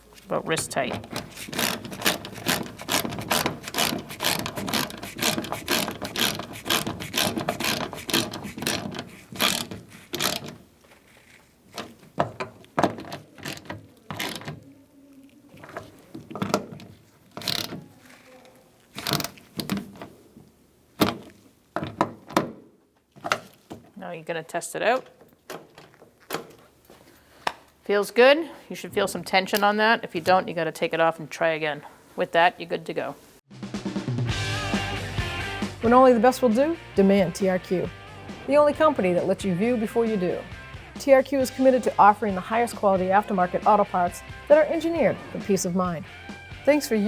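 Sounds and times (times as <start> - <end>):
hand ratchet clicking: 0.8 - 10.6, 13.0 - 14.6, 17.4 - 17.8, 19.0 - 19.8.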